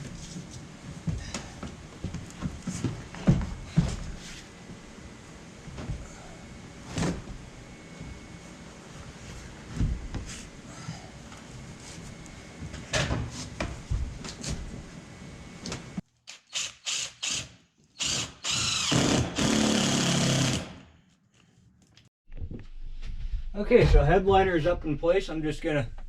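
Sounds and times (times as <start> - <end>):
power drill running: 16.3 - 20.7.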